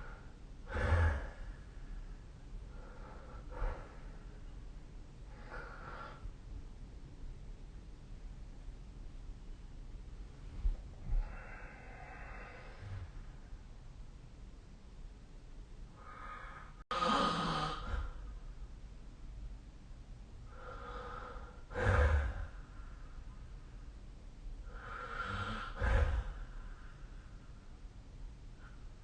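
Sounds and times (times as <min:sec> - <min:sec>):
person snoring: 0:00.7 - 0:01.5, 0:16.0 - 0:18.2, 0:20.5 - 0:22.6, 0:24.7 - 0:26.5.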